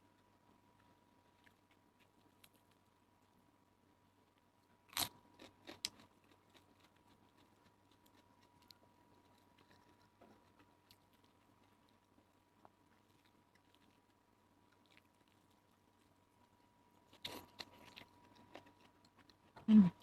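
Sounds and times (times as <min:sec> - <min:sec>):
person chewing: 0:04.9 - 0:19.6.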